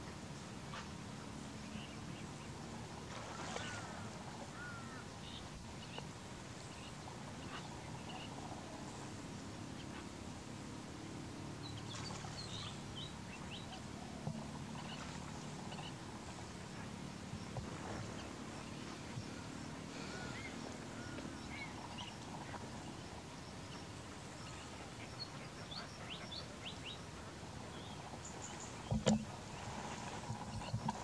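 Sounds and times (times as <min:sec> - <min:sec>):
birds chirping: 0:03.4 - 0:06.1, 0:11.6 - 0:31.0.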